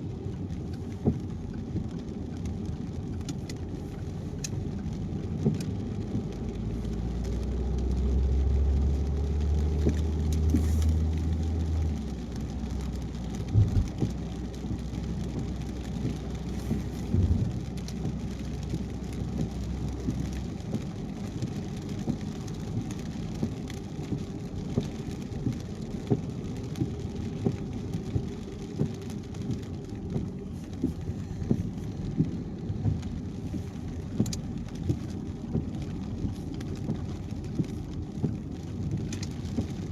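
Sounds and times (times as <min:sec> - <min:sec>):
deep low rumble: 0:00.0 - 0:39.9
low road rumble: 0:00.0 - 0:39.9
raindrops ticking on car: 0:00.0 - 0:39.9.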